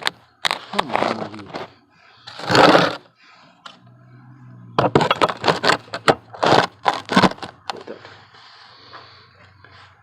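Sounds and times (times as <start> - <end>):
loud scrape: 0.4 - 3.3, 4.8 - 7.6
metal parts and tools clattering: 4.8 - 7.6.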